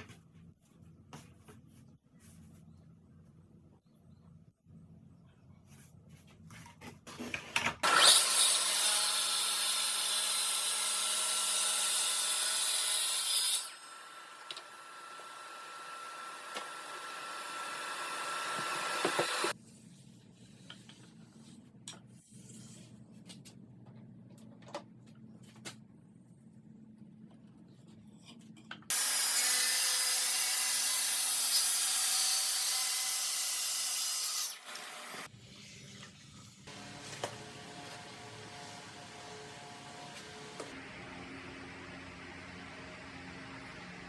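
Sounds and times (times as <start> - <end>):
saw cutting a board: 7.8 - 19.6, 28.9 - 35.3.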